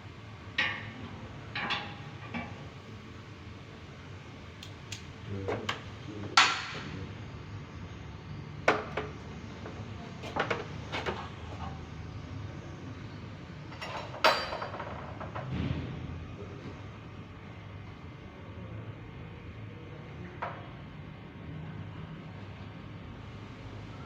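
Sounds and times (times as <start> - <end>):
metallic clanks and knocks: 13.7 - 16.0.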